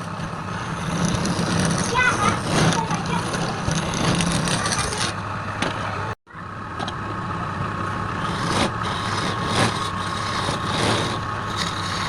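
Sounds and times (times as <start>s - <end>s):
wood lathe motor hum: 0.0s - 5.5s, 7.8s - 12.0s.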